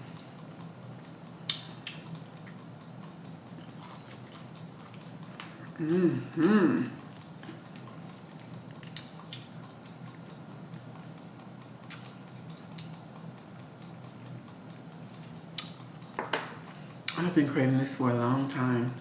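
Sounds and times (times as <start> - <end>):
person chewing: 1.5 - 10.2, 11.2 - 13.3.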